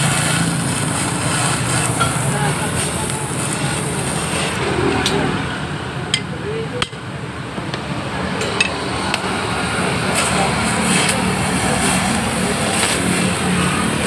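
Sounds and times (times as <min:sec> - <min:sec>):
street traffic noise: 0:00.0 - 0:14.0
metal taps of hand tools: 0:06.1 - 0:07.0.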